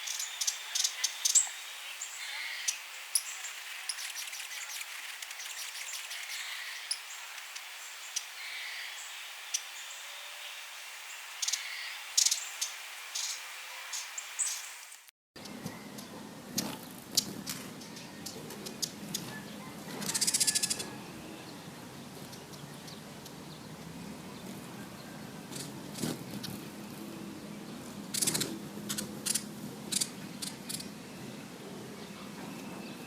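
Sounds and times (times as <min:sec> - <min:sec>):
hummingbird chip calls: 0:00.0 - 0:07.2, 0:07.9 - 0:10.5, 0:11.3 - 0:14.7, 0:17.9 - 0:21.6, 0:28.1 - 0:31.4
steady background hiss: 0:00.0 - 0:33.0.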